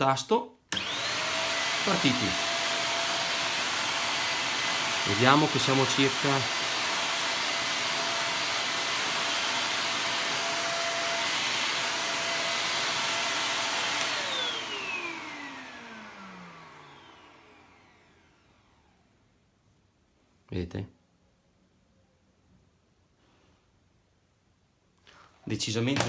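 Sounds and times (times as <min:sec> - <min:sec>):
stick vacuum cleaner running: 0:00.7 - 0:19.0.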